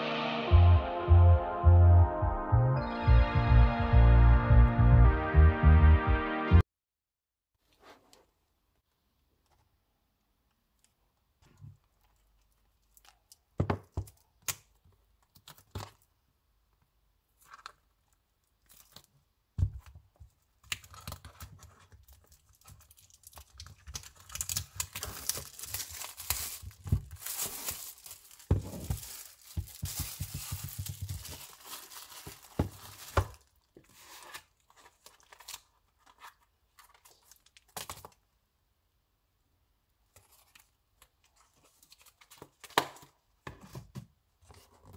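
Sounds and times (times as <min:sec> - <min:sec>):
packaging crinkling and tearing: 0:20.6 - 0:38.2.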